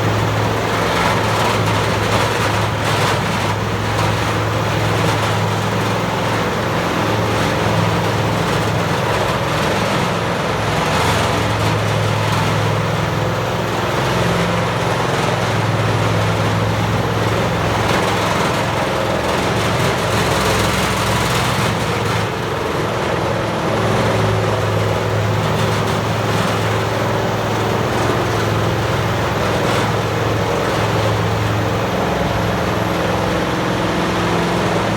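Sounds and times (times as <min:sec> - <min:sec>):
diesel engine drone: 0:00.0 - 0:34.9.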